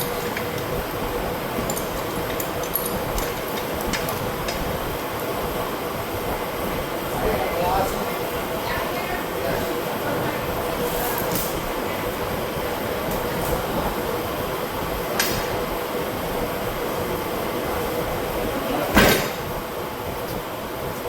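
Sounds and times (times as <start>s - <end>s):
electric fan blowing: 0.0s - 21.0s
loud metal clank: 18.9s - 19.5s.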